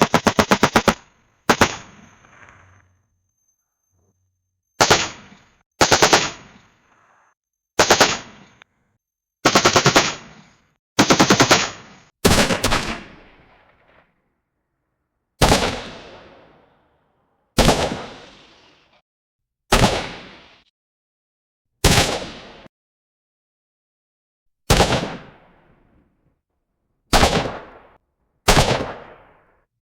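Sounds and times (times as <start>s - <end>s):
automatic gunfire bursts: 0.0s - 2.1s, 4.8s - 5.2s, 5.8s - 6.5s, 7.8s - 8.4s, 9.4s - 10.3s, 11.0s - 13.1s.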